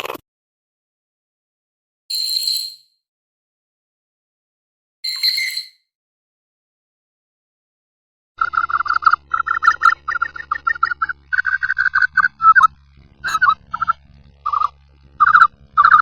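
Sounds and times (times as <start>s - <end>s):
faint low hum: 8.4s - 16.0s
sharp chattering bird-like calls: 8.4s - 16.0s.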